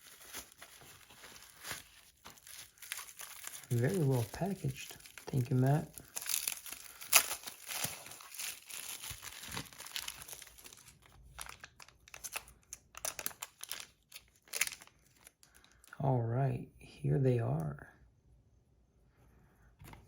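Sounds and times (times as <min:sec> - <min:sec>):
packaging crinkling and tearing: 0:00.0 - 0:15.9.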